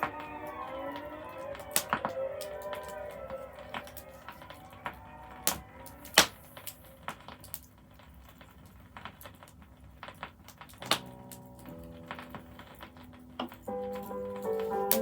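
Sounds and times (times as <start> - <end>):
music with sustained chord: 0.0 - 6.2, 11.1 - 15.0
faint vinyl hiss: 0.0 - 15.0
vinyl clicks and pops: 10.0 - 15.0.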